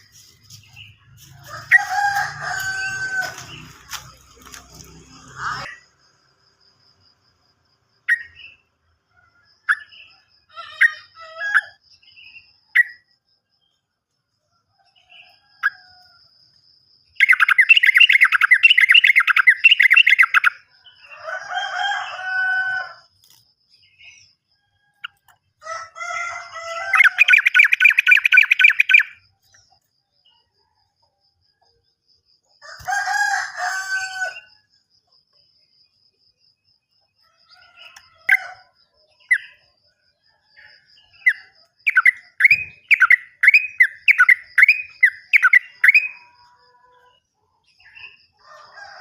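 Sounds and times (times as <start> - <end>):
bird chirping and trilling: 17.2 - 21.1, 26.6 - 29.3, 41.1 - 46.3.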